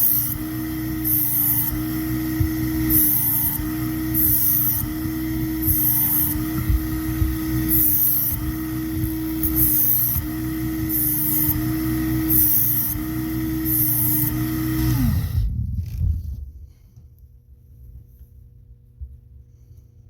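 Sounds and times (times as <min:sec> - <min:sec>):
knife blade grinding on belt: 0:00.0 - 0:15.1
belt sharpener running: 0:00.0 - 0:16.0.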